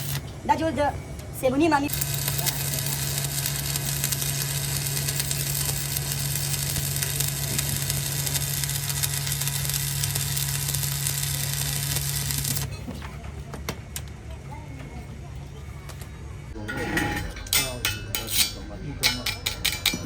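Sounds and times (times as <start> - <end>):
arc welding crackling: 0.0 - 0.4, 1.6 - 12.8.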